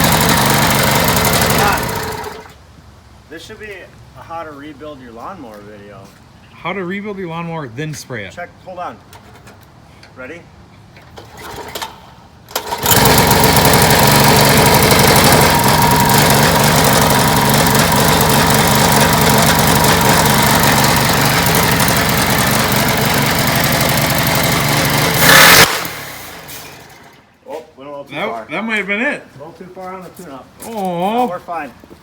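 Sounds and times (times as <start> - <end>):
lawn mower engine running at high speed: 0.0 - 2.5, 12.5 - 27.1.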